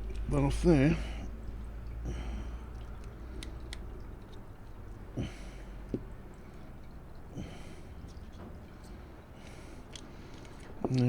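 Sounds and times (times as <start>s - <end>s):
fishing reel parts clicking: 9.8s - 11.0s.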